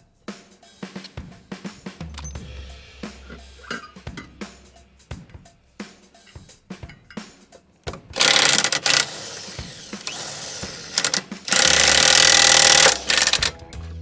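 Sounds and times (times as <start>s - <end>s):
impact driver hammering: 7.9s - 13.6s.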